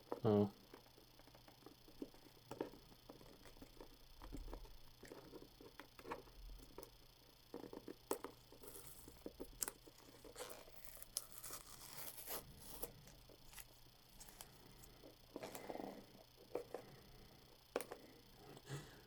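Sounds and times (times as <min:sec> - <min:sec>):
packaging tearing: 0:10.3 - 0:12.9.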